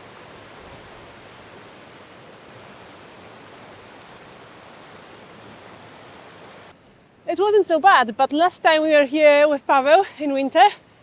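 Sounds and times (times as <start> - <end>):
stream water rushing: 0.0 - 11.0.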